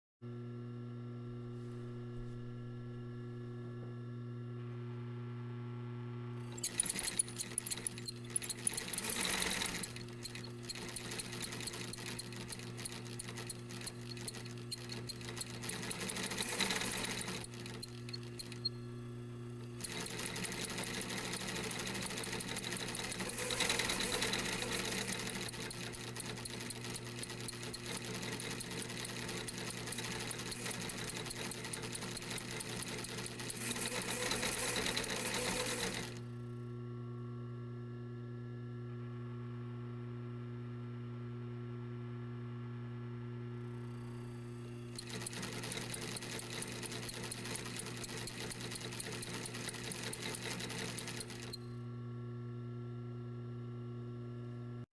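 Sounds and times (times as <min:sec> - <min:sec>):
sewing machine stitching: 0:06.5 - 0:18.7, 0:19.7 - 0:36.2, 0:45.0 - 0:51.6
motor hum: 0:06.5 - 0:36.2, 0:44.9 - 0:51.6.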